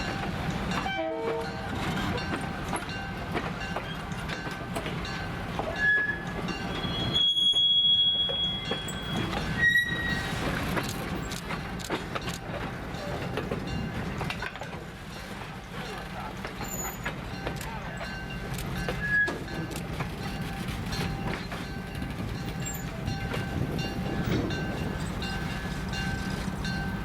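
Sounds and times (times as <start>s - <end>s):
train wheels clicking on rails: 0.0s - 27.0s
wheel squeals: 5.7s - 10.6s, 18.9s - 19.6s.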